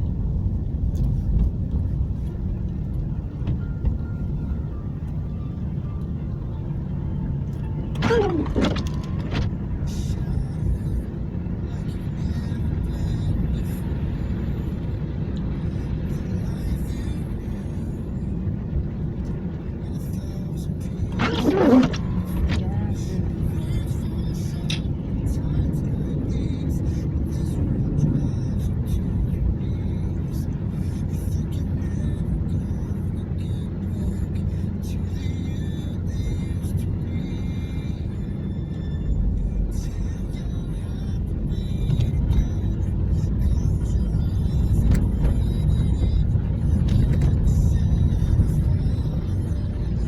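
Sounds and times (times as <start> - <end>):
car driving rumble: 0.0 - 50.0
brief pitch-changing sound: 7.9 - 9.5, 21.2 - 22.9.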